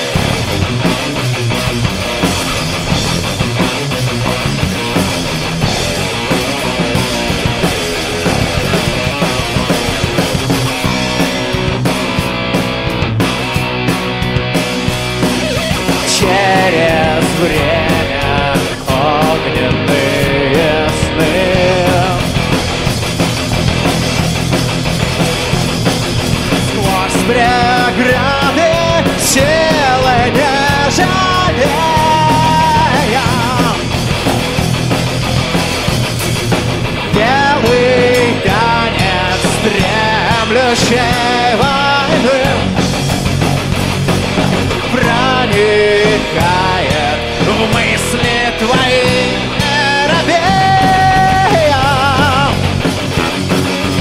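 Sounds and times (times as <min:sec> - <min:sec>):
bass guitar: 0:00.0 - 0:54.0
distorted electric guitar: 0:00.0 - 0:54.0
drum kit beat: 0:00.0 - 0:54.0
live rock band playing: 0:00.0 - 0:54.0
person singing: 0:15.8 - 0:22.4, 0:26.6 - 0:33.9, 0:37.1 - 0:42.8, 0:44.7 - 0:52.7.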